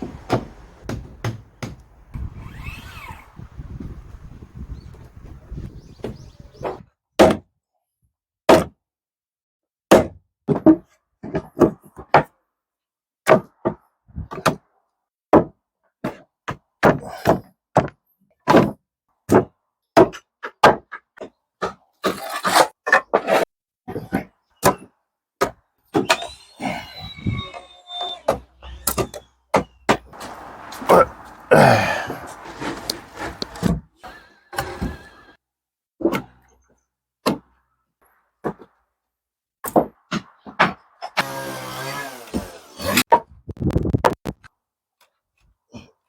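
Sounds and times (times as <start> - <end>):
hammer on wood: 0.3 - 1.8
scraping noise: 30.2 - 33.7.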